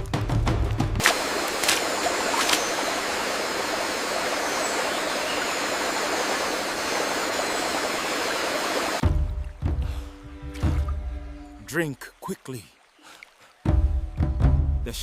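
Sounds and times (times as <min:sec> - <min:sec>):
running water rushing: 0:01.0 - 0:14.3.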